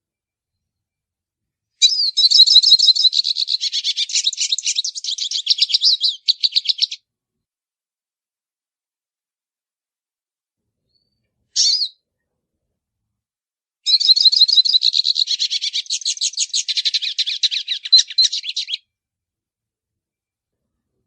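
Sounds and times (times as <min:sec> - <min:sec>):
bird call: 0:01.8 - 0:07.0, 0:11.6 - 0:12.0, 0:13.9 - 0:18.8
bird warbling twitter: 0:01.8 - 0:07.0, 0:11.6 - 0:12.0, 0:13.9 - 0:18.8.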